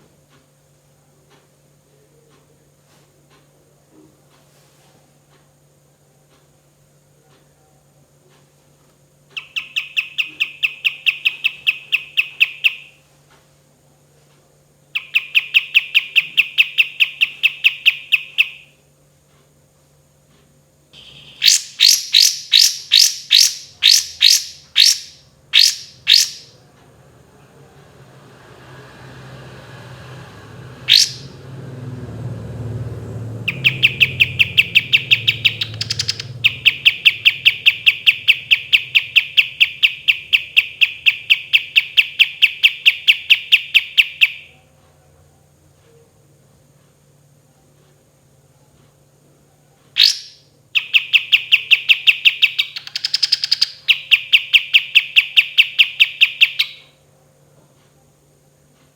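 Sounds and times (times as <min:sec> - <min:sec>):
bird singing trills: 0:09.4 - 0:13.0, 0:14.9 - 0:18.7, 0:21.0 - 0:26.6, 0:30.8 - 0:31.4, 0:33.3 - 0:44.6, 0:50.0 - 0:56.9.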